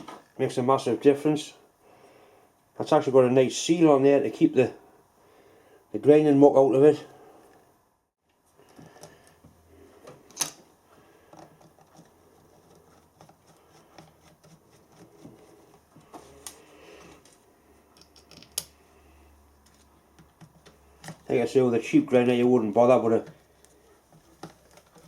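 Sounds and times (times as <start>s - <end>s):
small clicks and scrapes of parts: 11.2s - 19.0s, 19.6s - 21.4s, 23.2s - 25.0s.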